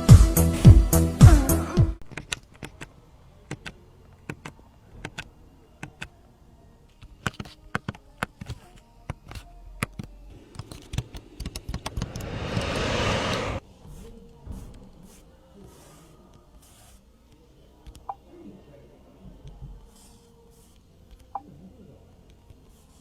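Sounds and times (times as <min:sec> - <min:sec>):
background music: 0:00.0 - 0:02.0
rush of noise: 0:10.4 - 0:13.6.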